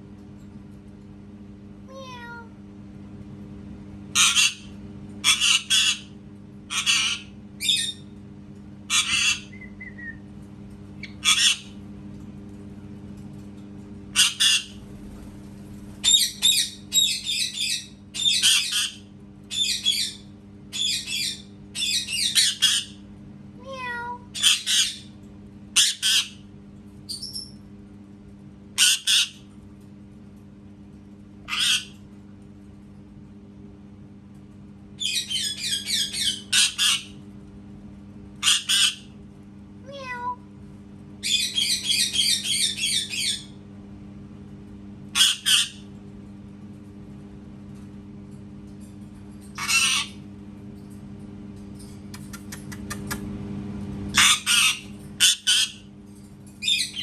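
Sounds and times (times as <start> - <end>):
steady low hum: 0.0 - 57.0
parrot squawking: 1.9 - 2.4, 4.2 - 6.1, 6.7 - 8.0, 8.9 - 9.7, 11.0 - 11.7, 14.2 - 20.2, 23.7 - 25.1, 31.5 - 32.0, 35.0 - 37.2, 38.4 - 39.1, 41.2 - 43.5, 45.2 - 45.8, 49.6 - 50.1, 54.2 - 55.9, 56.6 - 57.0.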